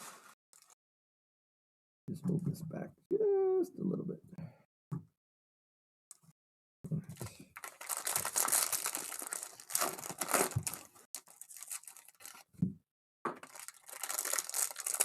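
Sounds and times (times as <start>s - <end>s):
wrappers tearing and crinkling: 7.6s - 12.5s, 13.4s - 15.0s.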